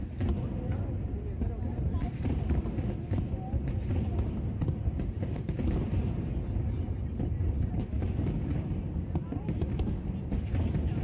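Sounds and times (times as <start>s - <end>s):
fireworks cracking: 0.0s - 11.0s.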